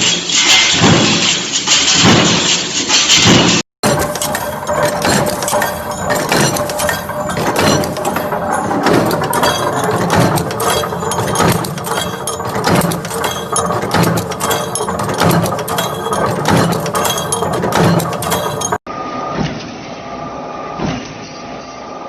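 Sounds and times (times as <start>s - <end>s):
machinery clanking: 3.2s - 18.8s
sharp metallic clinks: 3.8s - 18.8s.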